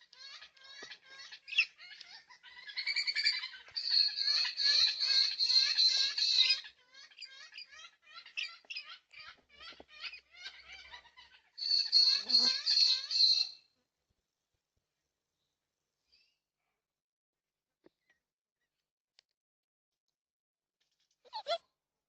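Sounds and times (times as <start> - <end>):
birds chirping: 0.0 - 13.6
harsh bird squawking: 0.3 - 9.0, 10.0 - 13.6.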